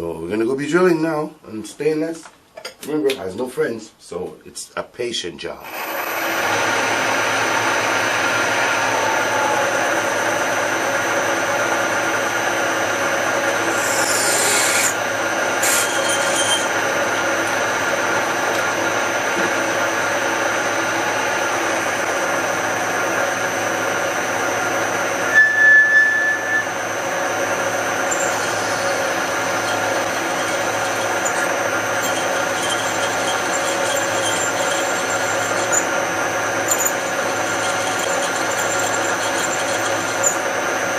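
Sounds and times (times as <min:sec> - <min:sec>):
drill cutting into steel: 0:05.7 - 0:08.5, 0:13.6 - 0:18.2, 0:27.6 - 0:40.5
machine spindle running: 0:13.2 - 0:25.4, 0:26.2 - 0:40.9
short high squeal: 0:15.6 - 0:17.3, 0:25.3 - 0:27.0, 0:28.0 - 0:35.9, 0:36.6 - 0:40.4.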